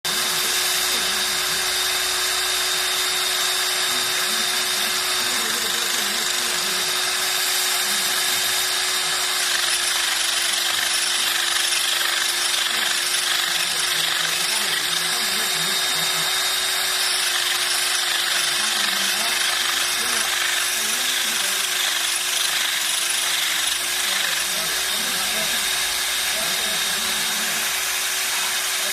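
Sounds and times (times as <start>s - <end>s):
small electric motor humming: 0.0s - 28.9s.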